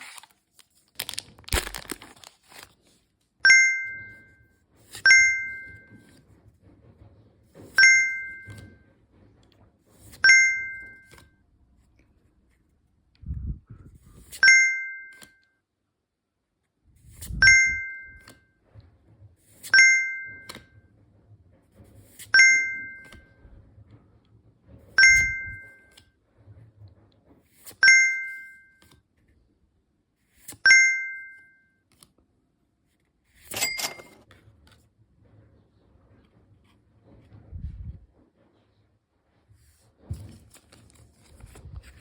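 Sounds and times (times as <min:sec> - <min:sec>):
two-tone ding: 0:03.4 - 0:04.4, 0:05.0 - 0:06.0, 0:07.8 - 0:08.8, 0:10.2 - 0:11.2, 0:14.4 - 0:15.4, 0:17.4 - 0:18.4, 0:19.7 - 0:20.7, 0:22.4 - 0:23.4, 0:25.0 - 0:25.9, 0:27.8 - 0:28.8, 0:30.6 - 0:31.8.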